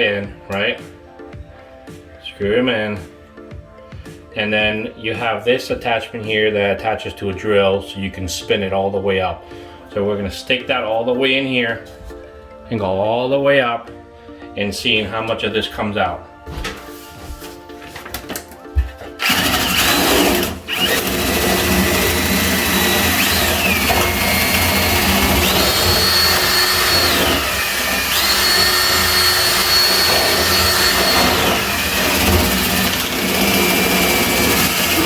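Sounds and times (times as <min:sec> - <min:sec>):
power drill motor whining: 0:19.2 - 0:35.0.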